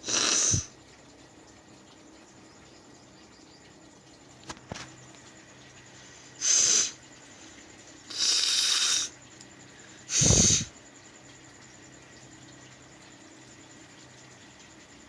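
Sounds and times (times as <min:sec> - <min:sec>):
person blowing air through nose: 0:00.0 - 0:00.7, 0:10.1 - 0:10.7.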